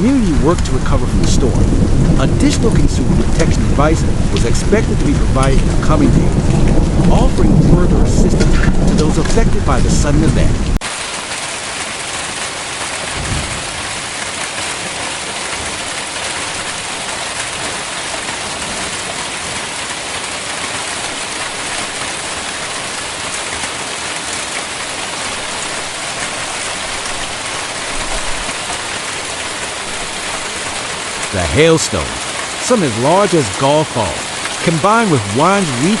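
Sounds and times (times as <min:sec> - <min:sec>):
hail and rain pattering: 0:00.0 - 0:36.0
low thump: 0:13.2 - 0:13.6.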